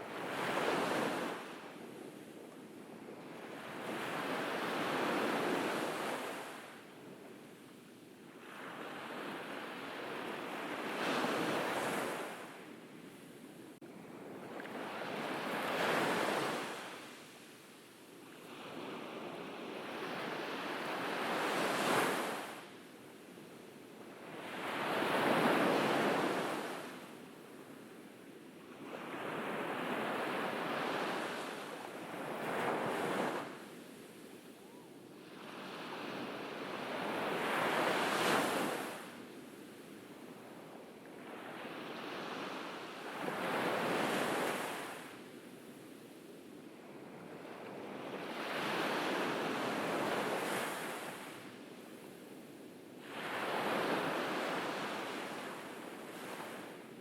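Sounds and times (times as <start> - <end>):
ocean waves breaking on shore: 0.0 - 2.3, 3.1 - 7.1, 8.3 - 12.7, 13.7 - 17.7, 18.3 - 22.9, 23.9 - 27.2, 28.6 - 39.3, 39.9 - 45.2, 46.9 - 52.1, 53.0 - 57.0.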